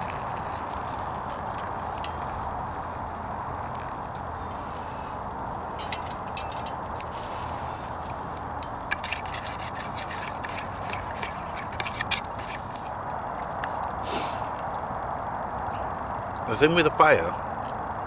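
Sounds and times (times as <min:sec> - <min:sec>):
wood fire crackling in stove: 0:00.0 - 0:09.0
steady hiss: 0:13.9 - 0:14.7.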